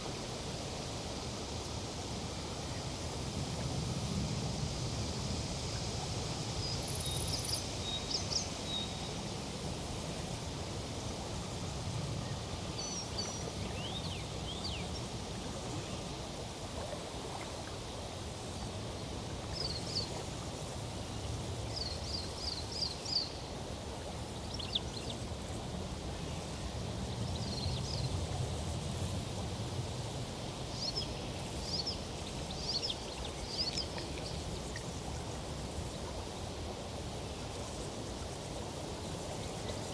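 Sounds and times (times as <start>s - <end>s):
breeze in foliage: 0.0s - 39.9s
flowing water: 0.0s - 39.9s.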